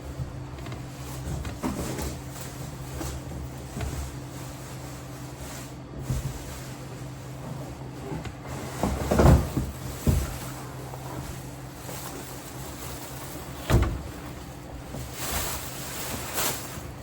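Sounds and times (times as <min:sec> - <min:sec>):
objects knocking and thudding: 0:07.4 - 0:16.4.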